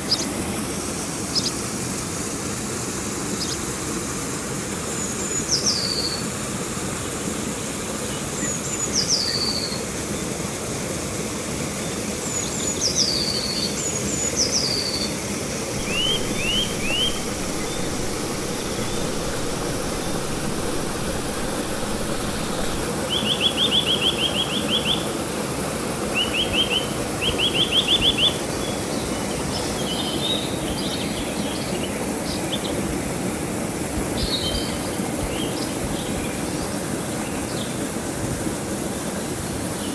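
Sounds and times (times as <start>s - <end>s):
river water rushing: 15.7s - 23.7s
bird rattling trills: 15.8s - 22.9s
songbirds whistling: 15.8s - 24.0s.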